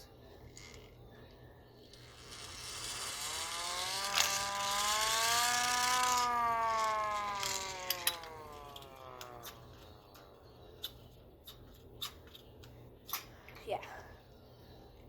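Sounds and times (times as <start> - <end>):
hand-cranked siren wailing: 2.0 - 10.1
siren mechanism clicks: 4.0 - 10.2.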